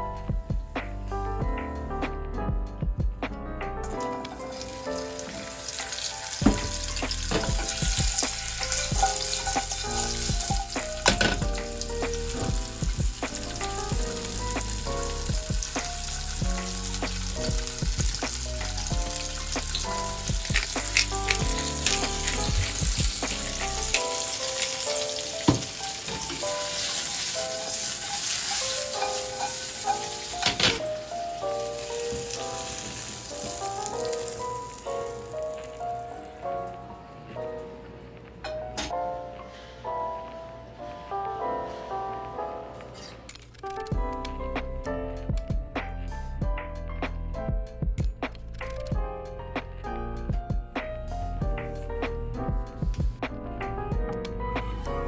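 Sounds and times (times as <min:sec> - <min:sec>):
background music: 0:00.0 - 0:55.0
food sizzling in a pan: 0:04.3 - 0:35.8.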